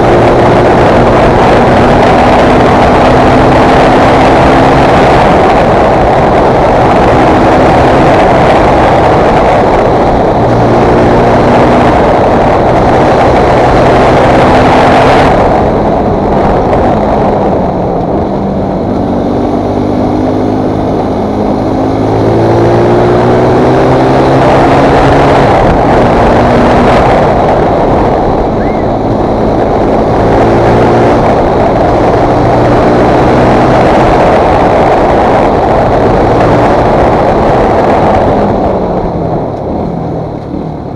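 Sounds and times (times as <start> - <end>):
motorcycle engine shifting gears: 0.0 - 40.9
wind noise on microphone: 0.0 - 40.9.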